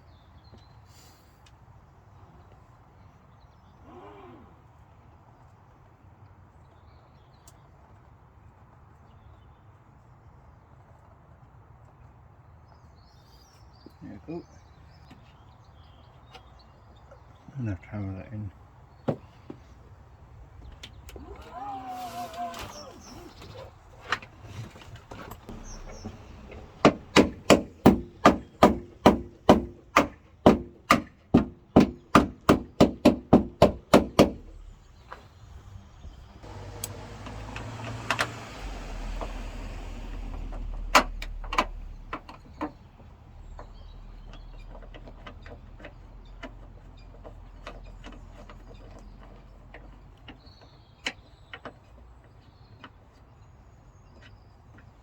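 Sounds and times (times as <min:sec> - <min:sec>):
scattered clicks and knocks: 0:25.0 - 0:34.5.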